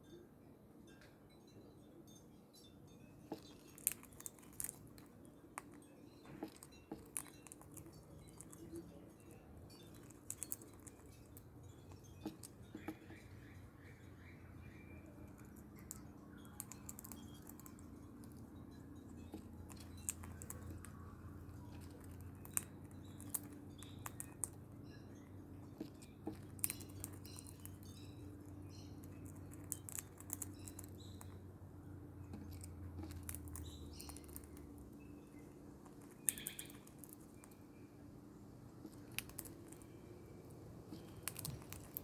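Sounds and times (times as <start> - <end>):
parrot crunching food: 3.3 - 42.0
faint parrot chirps: 8.2 - 31.5, 36.1 - 38.1.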